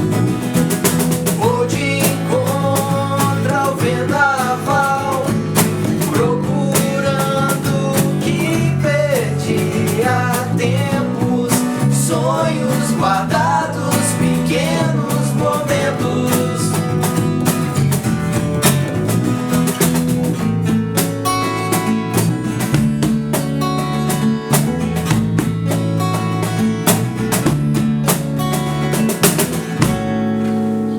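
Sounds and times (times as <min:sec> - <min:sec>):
rock band playing: 0:00.0 - 0:08.6, 0:15.4 - 0:30.9
electric guitar chords: 0:00.0 - 0:30.9
percussive drum hits: 0:16.8 - 0:30.4.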